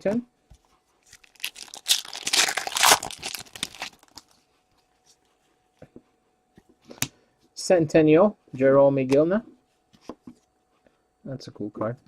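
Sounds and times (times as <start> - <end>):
foil wrapper tearing and crinkling: 1.1 - 4.3.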